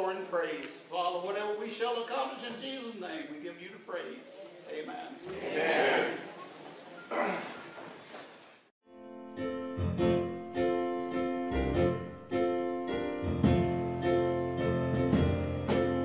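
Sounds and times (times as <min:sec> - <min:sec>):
keyboard playing sustained chords: 0:08.9 - 0:16.0.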